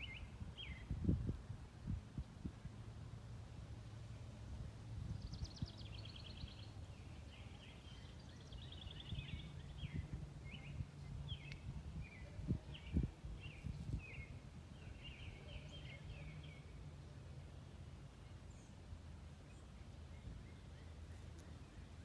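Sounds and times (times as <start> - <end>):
small birds chirping and trilling: 5.1 - 16.7.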